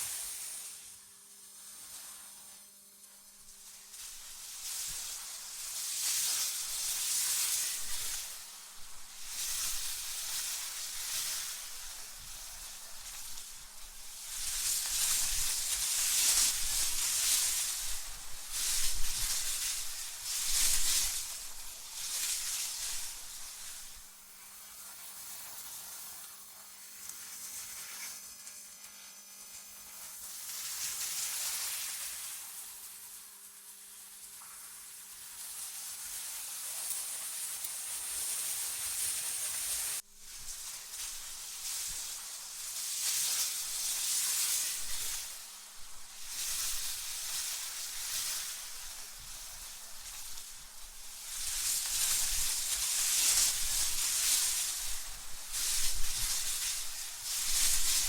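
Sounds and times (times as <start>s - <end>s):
wind hissing in gusts: 3.4s - 24.2s, 38.9s - 58.0s.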